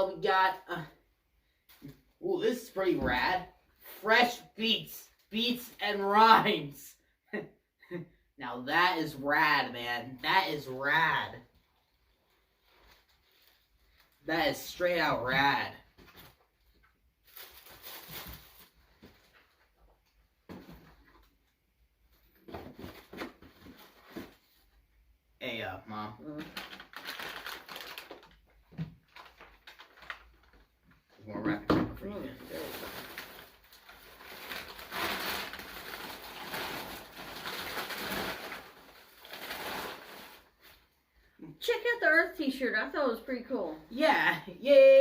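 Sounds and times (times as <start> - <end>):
wrapping paper rustling: 16.0 - 19.8, 26.4 - 31.1, 32.1 - 41.0.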